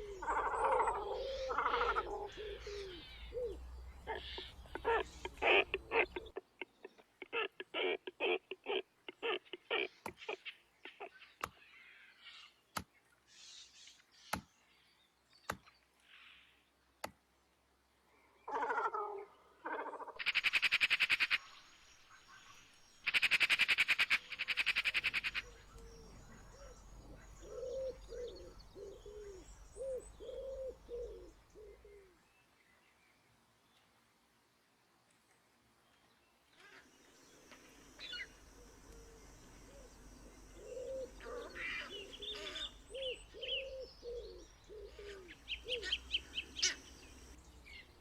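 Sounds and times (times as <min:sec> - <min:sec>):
high bird calls: 0:00.0 - 0:12.6, 0:18.5 - 0:32.1, 0:36.6 - 0:48.0
short low bird calls: 0:00.0 - 0:12.6, 0:18.5 - 0:32.2, 0:37.8 - 0:47.9.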